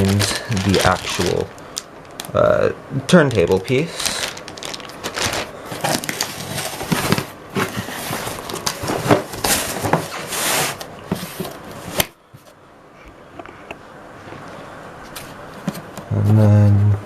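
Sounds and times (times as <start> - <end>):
cardboard box rustling: 4.0 - 12.1.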